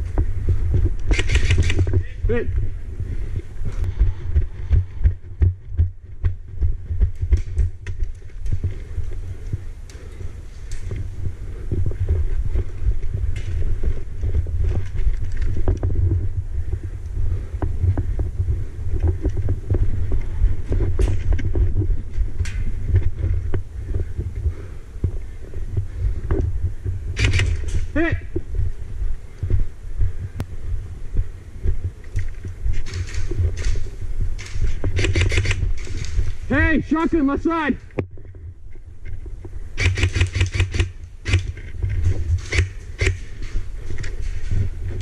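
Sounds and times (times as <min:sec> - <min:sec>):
low thudding and rumble: 0:00.0 - 0:36.6
sharp clicks: 0:01.0 - 0:02.0, 0:27.2 - 0:27.9, 0:32.0 - 0:36.2, 0:39.8 - 0:44.3.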